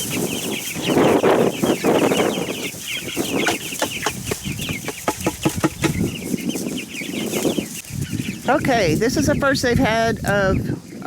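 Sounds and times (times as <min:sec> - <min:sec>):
chicks peeping: 0:00.0 - 0:11.0
sharp taps and knocks: 0:03.4 - 0:06.1.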